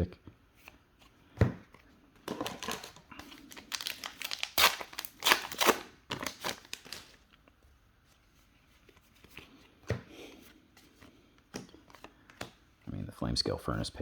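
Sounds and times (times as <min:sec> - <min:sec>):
foil wrapper crinkling and tearing: 0:02.3 - 0:07.2.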